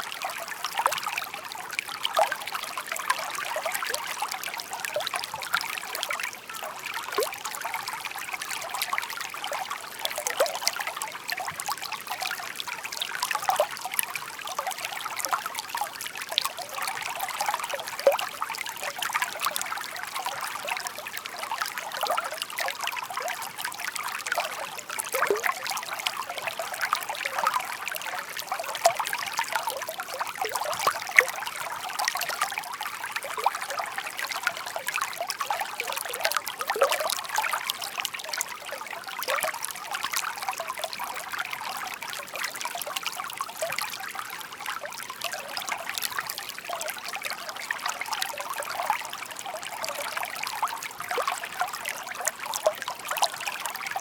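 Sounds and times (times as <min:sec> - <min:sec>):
stream babbling and trickling: 0:00.0 - 0:54.0.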